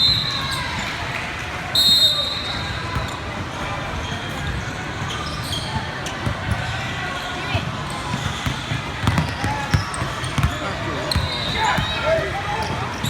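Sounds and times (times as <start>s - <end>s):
shrill whistle blast: 0.0s - 0.7s, 1.7s - 2.8s
voices: 5.5s - 13.0s
basketball bouncing on gym floor: 8.1s - 12.0s.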